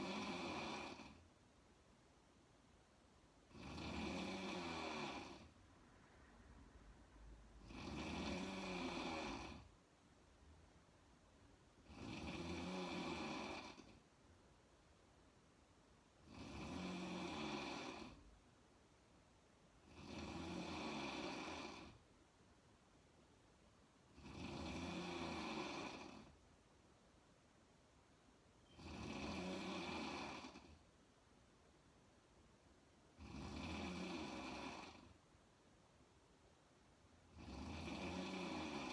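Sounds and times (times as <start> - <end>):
woman snoring: 0.0 - 1.3, 3.5 - 5.6, 7.6 - 9.7, 11.8 - 14.0, 16.2 - 18.3, 19.8 - 22.0, 24.1 - 26.4, 28.6 - 30.8, 33.1 - 35.2, 37.3 - 38.9
quiet breathing: 3.4 - 9.8.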